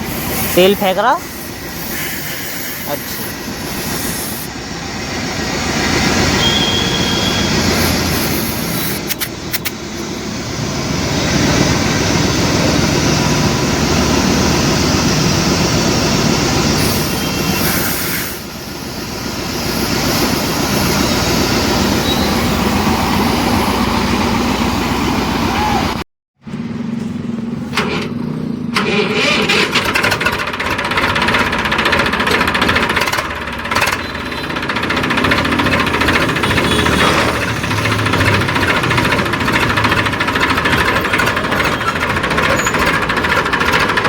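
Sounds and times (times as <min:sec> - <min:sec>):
engine rumbling: 0:00.0 - 0:44.0
sharp clicks: 0:09.0 - 0:09.8.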